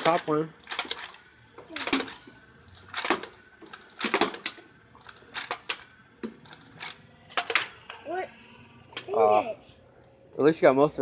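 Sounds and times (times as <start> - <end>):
toy blaster firing clicks: 0.0 - 8.2.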